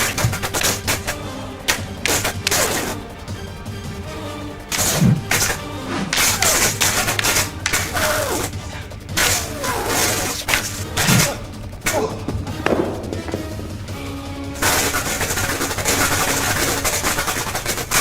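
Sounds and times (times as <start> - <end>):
lightsaber clashes: 3.8 - 17.2
lightsaber swings: 4.6 - 13.7.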